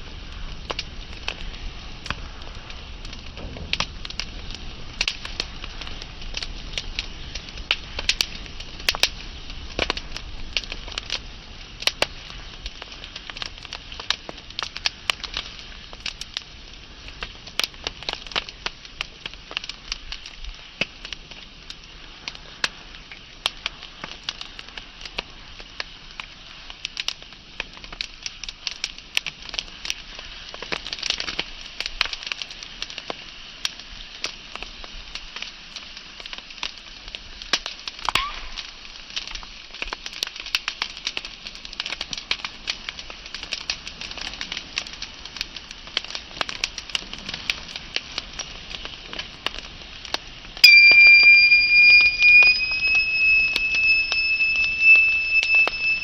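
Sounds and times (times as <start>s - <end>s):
wood fire crackling: 0.0s - 56.0s
high whistling tone: 50.6s - 56.0s.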